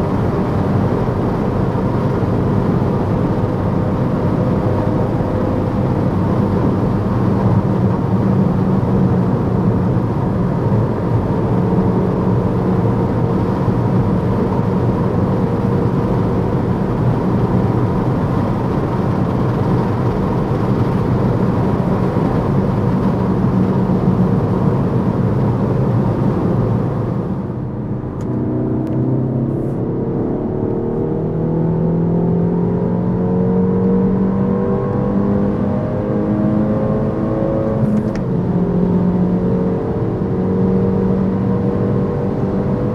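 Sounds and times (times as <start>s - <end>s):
road noise rushing: 0.0s - 32.5s
car engine droning: 0.0s - 42.9s.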